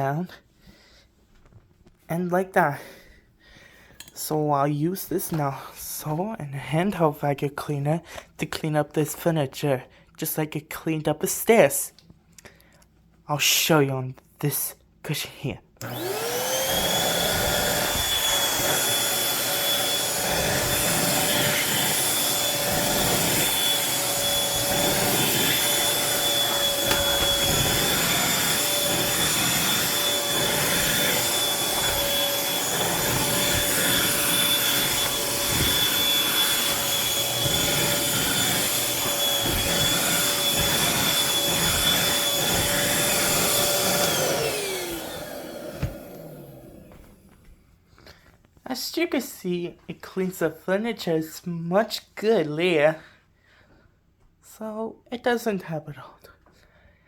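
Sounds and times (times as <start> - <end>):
vacuum cleaner motor whining: 15.8 - 47.5.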